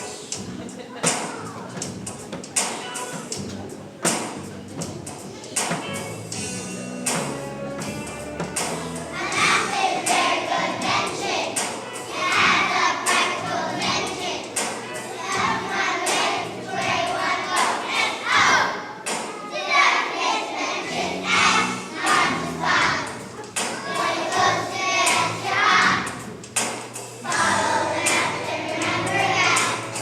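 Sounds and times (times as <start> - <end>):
instrumental accompaniment: 0.0 - 30.0
children's choir singing: 7.0 - 30.0.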